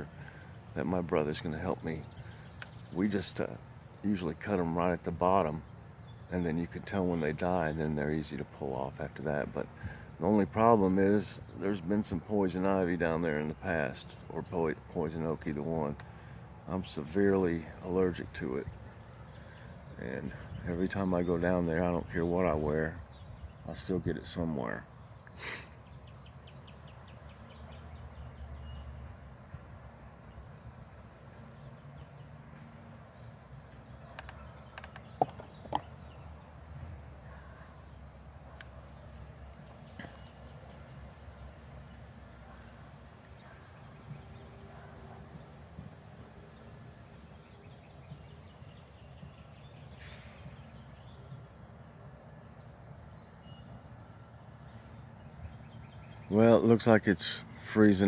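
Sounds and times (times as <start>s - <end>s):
songbirds chirping: 0.0s - 58.0s
thin whistled bird notes: 38.5s - 42.8s.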